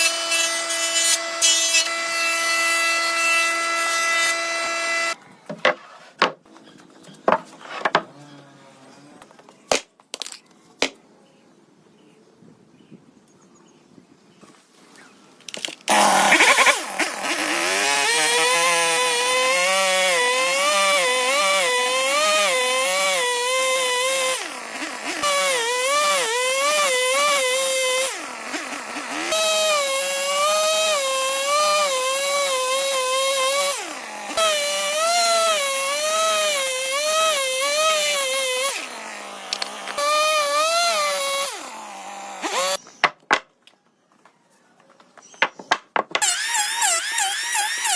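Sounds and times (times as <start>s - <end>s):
power tool cutting wood: 0.0s - 5.2s, 15.9s - 42.9s, 46.0s - 47.9s.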